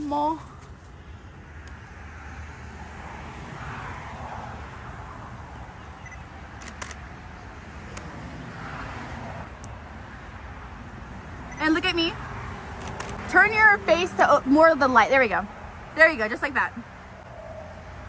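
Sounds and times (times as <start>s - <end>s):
traffic rumble: 0.0s - 18.0s
sharp clicks: 6.6s - 7.0s, 12.8s - 13.3s.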